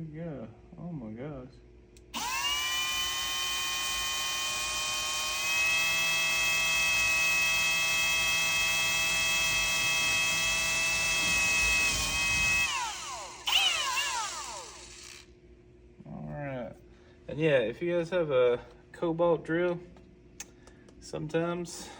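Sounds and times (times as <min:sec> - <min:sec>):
cordless drill motor whining: 0:02.0 - 0:15.3.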